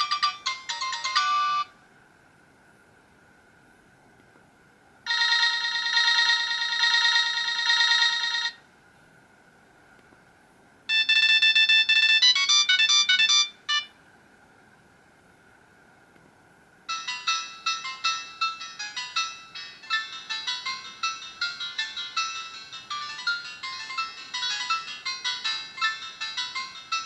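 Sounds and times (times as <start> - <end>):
phone ringtone melodies: 0.0 - 1.8, 5.1 - 8.6, 10.9 - 13.9, 16.9 - 27.0.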